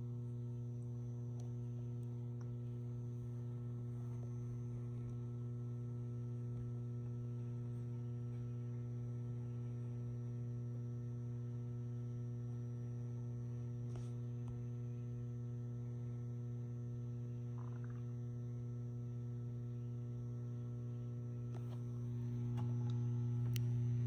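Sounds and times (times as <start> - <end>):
flood light ballast humming: 17.0 - 24.0.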